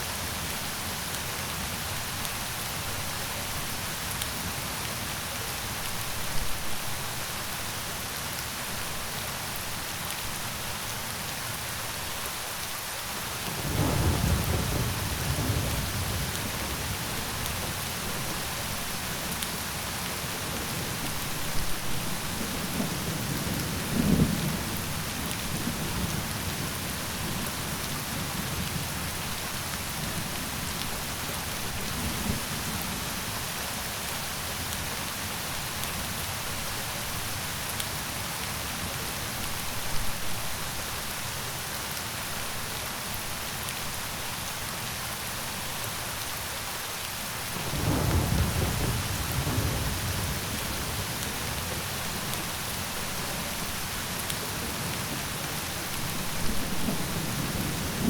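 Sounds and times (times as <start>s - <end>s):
steady rain falling: 0.0s - 58.0s
thunder rumbling: 13.6s - 17.7s, 47.6s - 52.0s.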